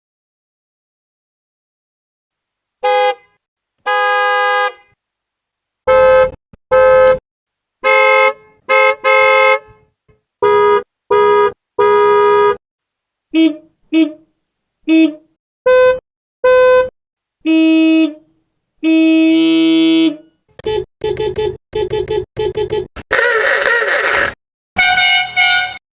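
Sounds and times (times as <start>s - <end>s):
car horns honking: 2.8s - 5.0s, 5.9s - 7.2s, 7.8s - 9.8s, 10.4s - 12.6s, 23.1s - 25.8s.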